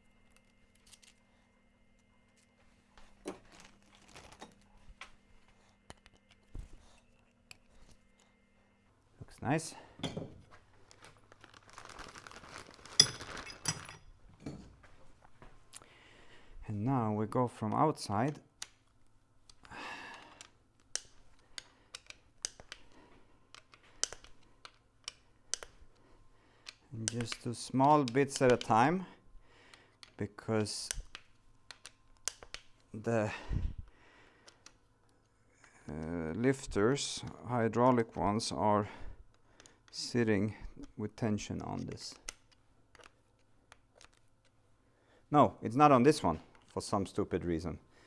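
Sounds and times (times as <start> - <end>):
faint electrical hum: 0.0 - 48.0
small metal parts clicking: 0.3 - 1.2, 12.8 - 14.0, 19.5 - 22.9, 23.5 - 25.9
plastic bags rustling: 3.0 - 5.6, 10.4 - 14.2.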